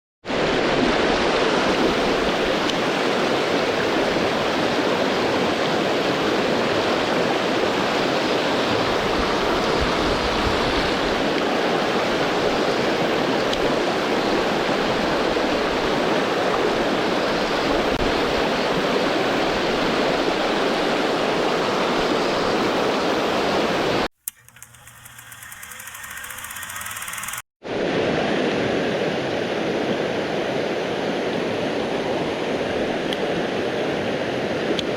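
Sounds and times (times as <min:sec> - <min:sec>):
mountain stream rushing: 0:00.3 - 0:23.7.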